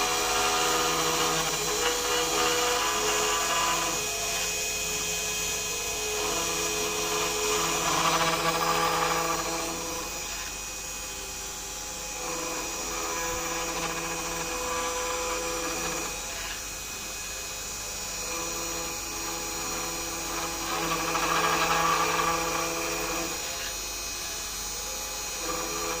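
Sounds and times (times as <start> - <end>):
motor whines: 0.0 - 26.0
router carving wood: 0.0 - 26.0
spindle motor running: 0.0 - 26.0.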